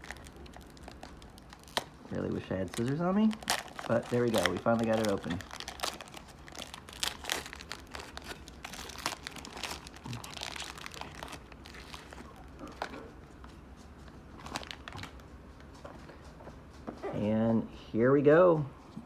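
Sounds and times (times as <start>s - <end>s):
plastic wrapper crinkling: 0.0s - 13.4s, 14.3s - 15.3s.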